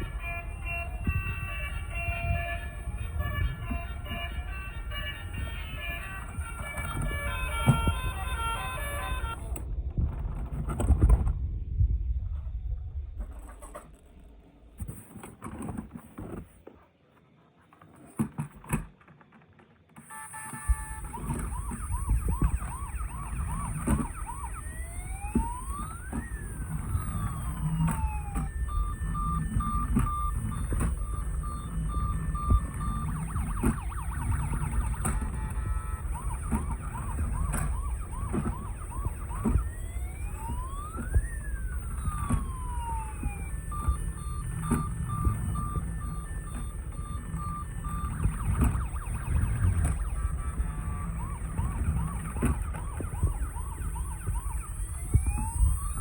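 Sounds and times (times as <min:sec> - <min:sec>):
clicks: 0:00.0 - 0:09.7, 0:20.0 - 0:56.0
toy electronic siren: 0:00.0 - 0:09.7, 0:20.0 - 0:56.0
low rumble: 0:09.4 - 0:14.7.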